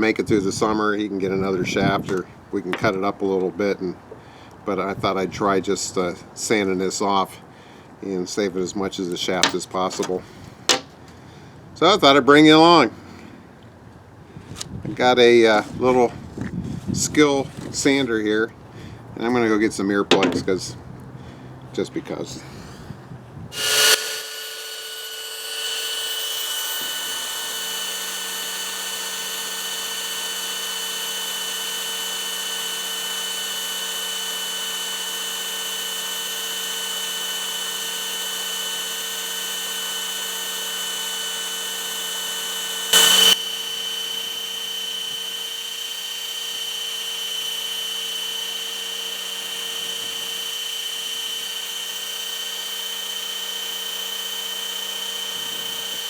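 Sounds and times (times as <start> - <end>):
electric sander motor whine: 23.5 - 56.0.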